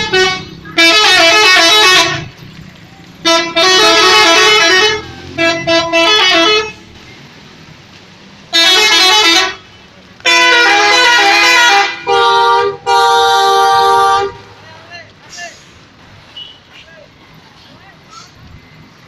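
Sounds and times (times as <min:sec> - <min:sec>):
multi-tone musical bus horn: 0:00.0 - 0:02.4, 0:03.2 - 0:07.0, 0:08.5 - 0:14.6.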